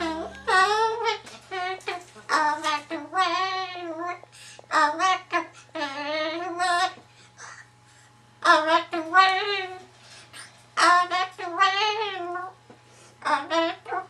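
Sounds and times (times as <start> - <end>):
cockatoo singing: 0.0 - 7.7, 8.4 - 12.6, 13.2 - 14.0.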